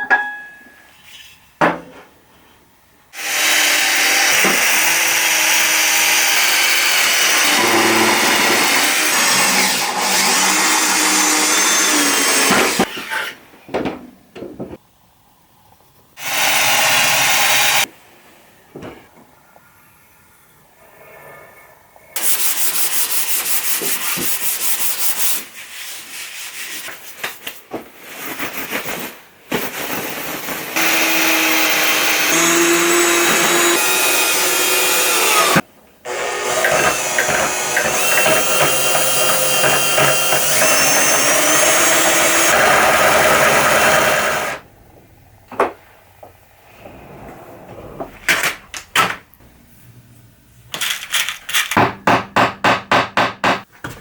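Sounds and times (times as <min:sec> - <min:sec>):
power tool motor running: 0:03.2 - 0:12.9, 0:30.8 - 0:44.6.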